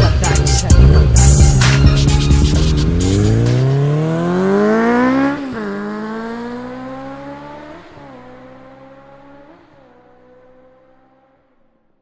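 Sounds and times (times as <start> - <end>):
music with a beat: 0.0 - 4.4
engine revving: 0.0 - 11.2.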